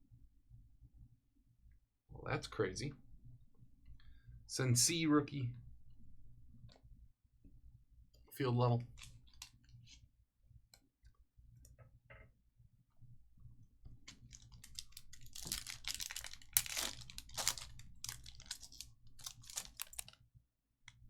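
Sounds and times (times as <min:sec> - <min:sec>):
card wrappers crinkling: 0:14.2 - 0:20.2.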